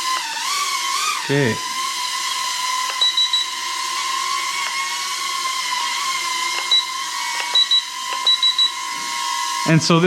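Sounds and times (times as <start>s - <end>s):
quadcopter motors whining: 0.0s - 10.0s
remote control beeps: 2.9s - 3.6s, 6.6s - 8.8s.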